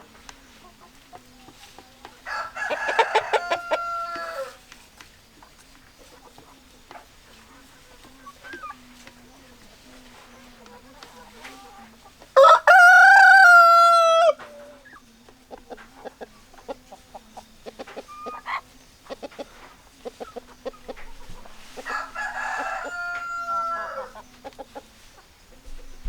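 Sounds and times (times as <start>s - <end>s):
hens clucking: 0.0s - 26.0s
rooster crowing: 2.2s - 4.6s, 12.4s - 14.7s, 21.7s - 24.3s.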